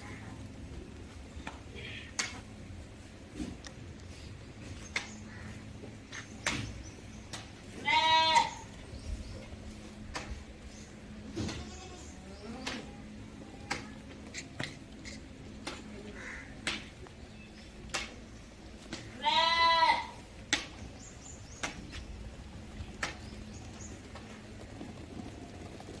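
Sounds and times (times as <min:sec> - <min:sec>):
goat bleating: 0:07.7 - 0:08.8, 0:11.3 - 0:12.7, 0:19.0 - 0:20.3
sharp clicks and knocks: 0:17.9 - 0:18.2, 0:20.5 - 0:20.9.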